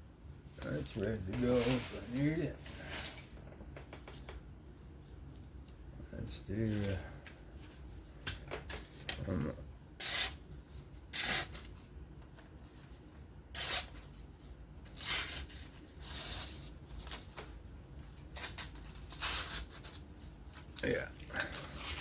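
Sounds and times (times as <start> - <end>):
knife rasping on sharpener: 13.6 - 13.9.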